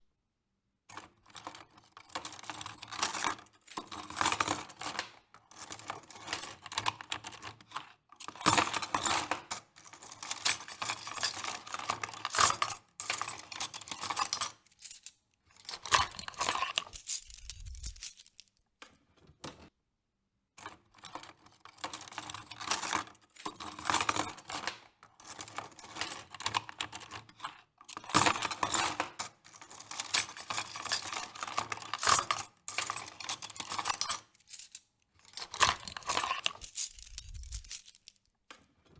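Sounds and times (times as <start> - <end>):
metal cutlery clattering: 8.2 - 18.4, 27.9 - 38.1.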